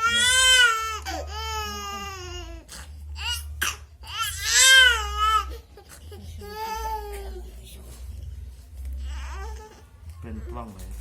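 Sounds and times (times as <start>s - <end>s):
baby crying: 0.0s - 7.5s, 9.0s - 10.0s.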